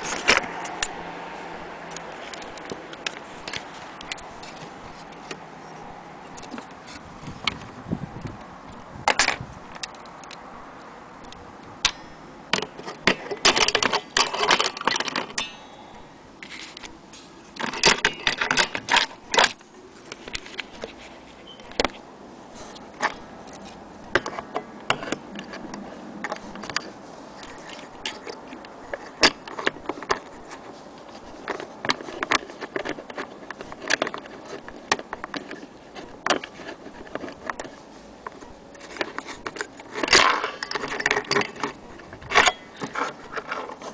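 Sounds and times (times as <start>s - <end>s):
metal clock parts clinking: 11.2s - 15.6s, 16.7s - 21.9s, 23.0s - 43.9s.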